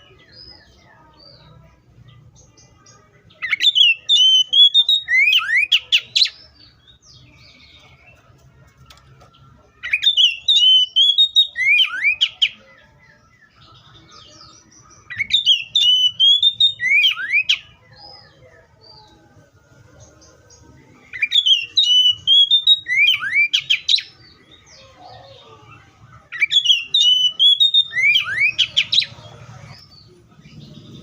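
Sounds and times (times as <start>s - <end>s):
bird singing whistled notes: 3.4s - 7.2s, 9.8s - 12.7s, 14.4s - 18.4s, 21.1s - 24.8s, 26.3s - 29.2s.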